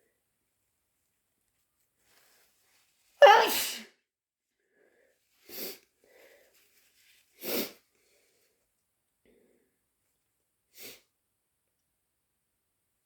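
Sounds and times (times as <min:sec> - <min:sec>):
person sneezing: 0:03.2 - 0:03.9.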